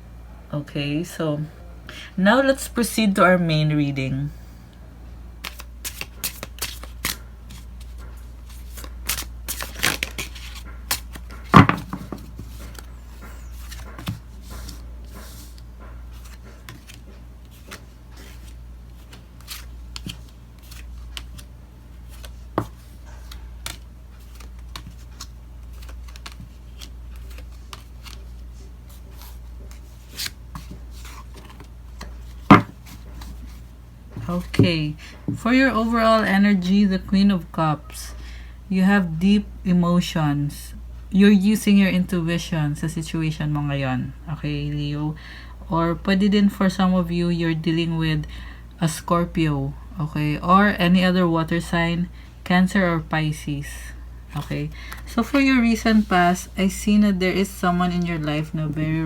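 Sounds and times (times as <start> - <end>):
cards being shuffled: 5.4 - 35.4.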